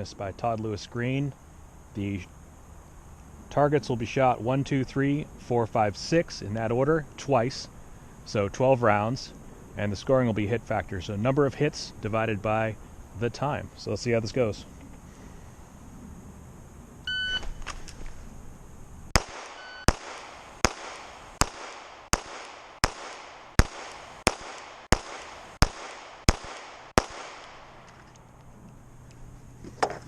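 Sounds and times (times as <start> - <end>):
shot timer beep: 17.1 - 17.5
pistol shots: 19.1 - 28.0.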